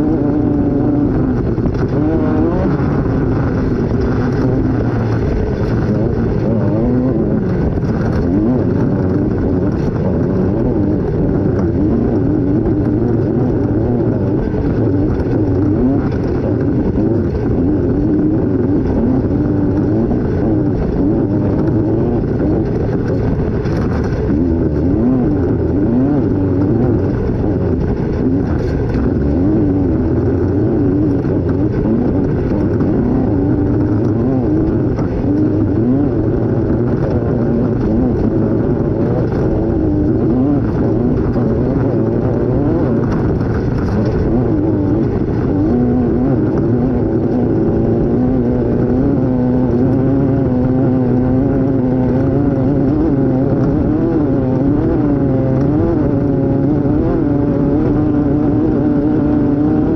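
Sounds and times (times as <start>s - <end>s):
racing engine revving: 0.0s - 59.9s.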